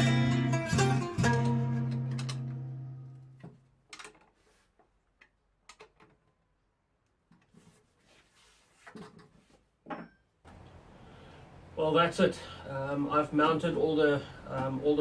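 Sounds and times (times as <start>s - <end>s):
faint clicks and knocks: 3.4s - 6.4s.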